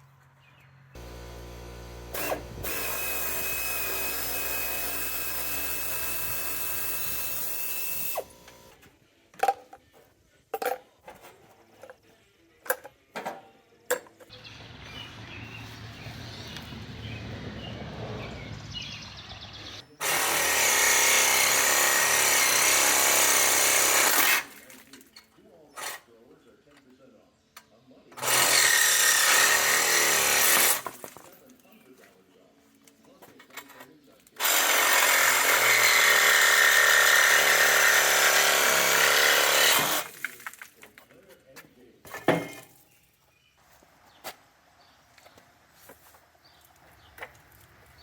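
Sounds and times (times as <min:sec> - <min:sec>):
power tool running: 0:01.0 - 0:08.8, 0:20.0 - 0:24.5, 0:28.2 - 0:30.8, 0:34.4 - 0:40.2.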